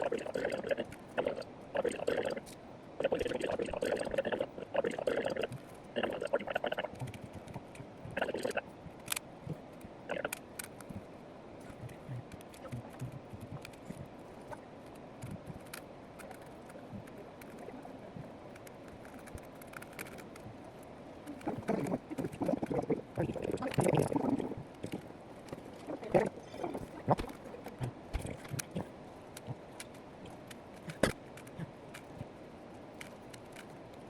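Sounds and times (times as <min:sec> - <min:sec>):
background hiss: 0:00.0 - 0:34.0
puzzle cube clicking: 0:18.5 - 0:20.5.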